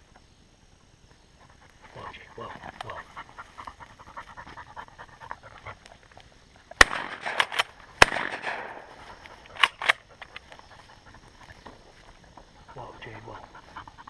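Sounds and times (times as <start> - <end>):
shotgun shots: 6.8 - 10.0
dog whimpering and panting: 12.2 - 14.0.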